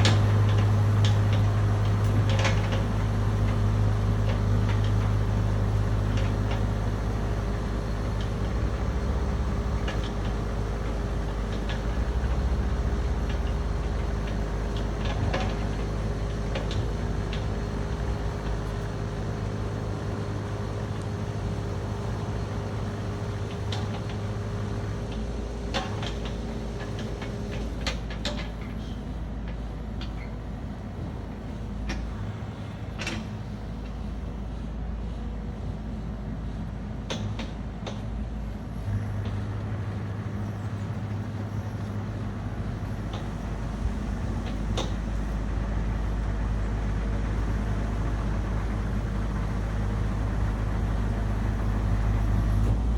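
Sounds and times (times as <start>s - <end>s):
excavator diesel engine running: 0.0s - 52.9s.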